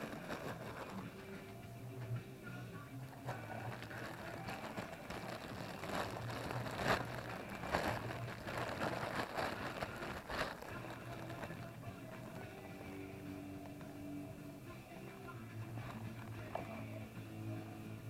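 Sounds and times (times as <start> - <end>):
rustling: 0.0 - 1.7, 2.6 - 13.7.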